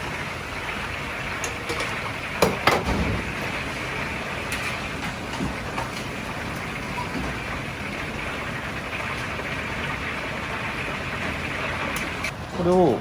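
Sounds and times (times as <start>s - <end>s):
wok burner roaring: 0.0s - 13.0s.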